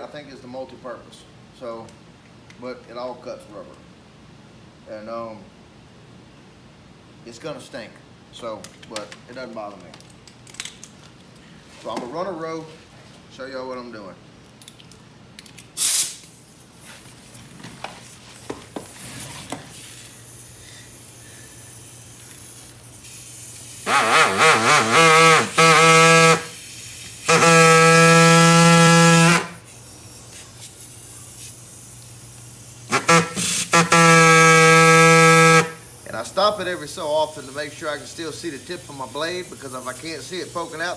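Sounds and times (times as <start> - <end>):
electric saw buzzing: 23.8 - 26.6, 27.2 - 29.6, 32.9 - 35.8.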